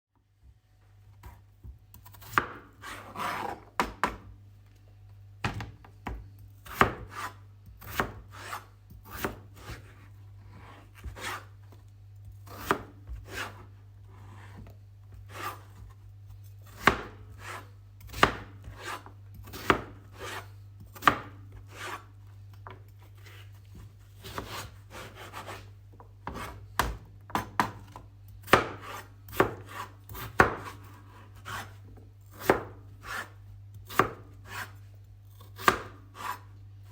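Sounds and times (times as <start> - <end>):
knife chopping on cutting board: 2.0 - 4.3, 5.4 - 10.0, 10.6 - 11.5, 12.4 - 13.7, 14.3 - 15.9, 16.6 - 22.1, 23.2 - 34.8, 35.4 - 36.4.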